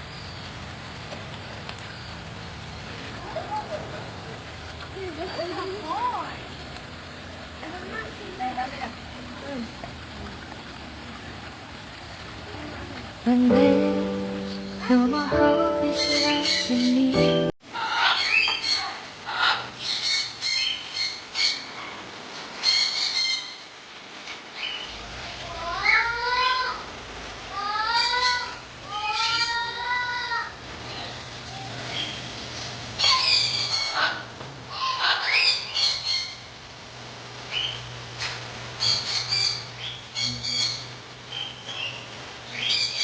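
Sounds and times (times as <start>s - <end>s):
birds squawking: 15.8s - 21.7s, 33.0s - 36.5s, 38.8s - 43.0s.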